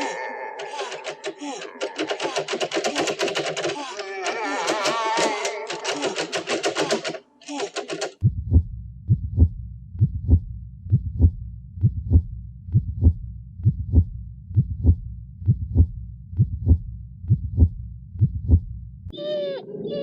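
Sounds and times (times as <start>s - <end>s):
slow heartbeat thumps: 8.2s - 18.8s
steady low rumble: 8.2s - 19.1s.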